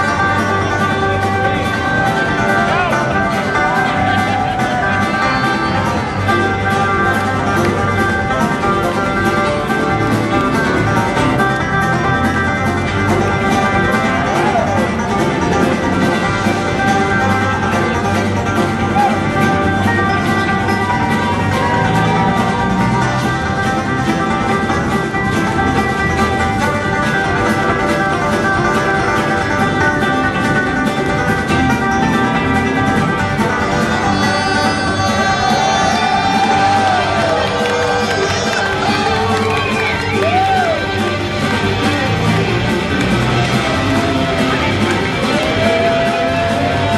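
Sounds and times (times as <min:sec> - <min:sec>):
banjo and guitar picking: 0:00.0 - 0:46.9
bluegrass band playing: 0:00.0 - 0:46.9
person singing: 0:33.7 - 0:37.0.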